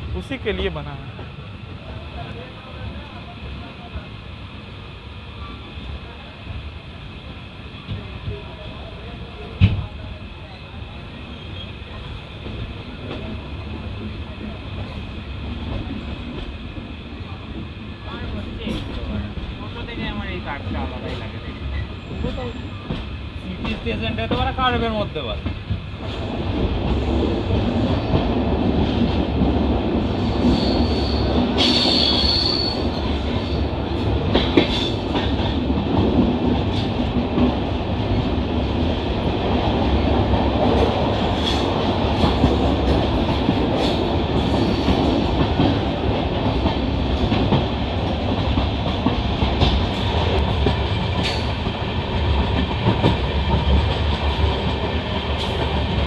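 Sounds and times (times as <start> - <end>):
train wheels rumbling on rail: 0.0 - 56.0
rail joint clicks: 9.5 - 10.0, 11.3 - 56.0
high wheel squeal: 30.2 - 33.6.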